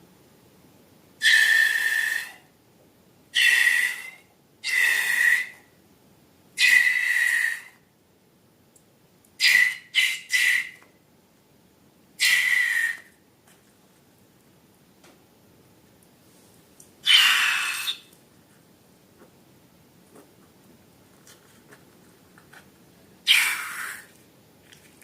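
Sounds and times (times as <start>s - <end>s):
air squealing out of balloon: 6.6s - 7.8s, 9.4s - 10.8s, 12.2s - 13.1s, 17.0s - 18.1s, 23.2s - 24.1s.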